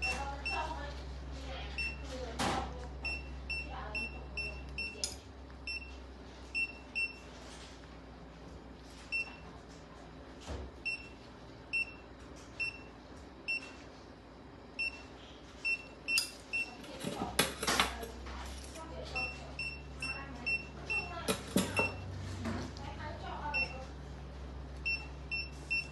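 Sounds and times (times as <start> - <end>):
patient monitor beeping: 0.0 - 0.8, 1.7 - 2.1, 2.9 - 7.4, 9.0 - 9.6, 10.8 - 13.9, 14.7 - 17.0, 19.0 - 22.2, 23.4 - 23.9, 24.7 - 25.9
rustling and handling noise: 7.2 - 10.5.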